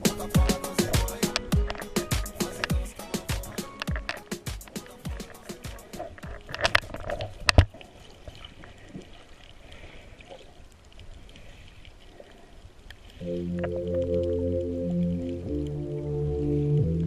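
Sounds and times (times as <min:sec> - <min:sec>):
music: 0:00.0 - 0:06.3, 0:13.2 - 0:17.0
water splashes and knocks: 0:00.0 - 0:09.5
rushing water: 0:00.0 - 0:17.0.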